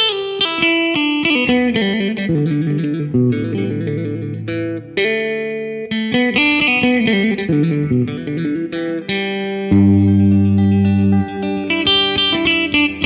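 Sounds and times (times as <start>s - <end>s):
guitar playing quick notes: 6.1s - 13.0s.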